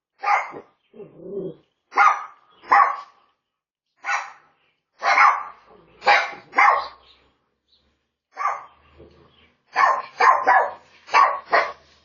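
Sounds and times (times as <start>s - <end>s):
dog barking: 0.2s - 0.8s, 1.9s - 3.2s, 4.0s - 7.0s, 8.4s - 8.8s, 9.7s - 11.9s.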